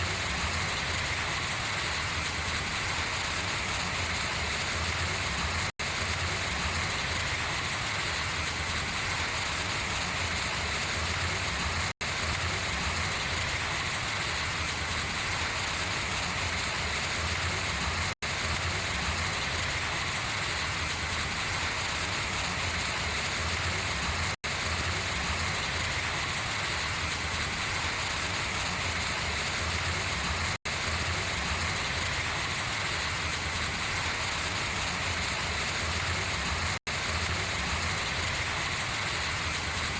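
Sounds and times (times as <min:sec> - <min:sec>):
rain falling on large leaves: 0:00.1 - 0:39.9.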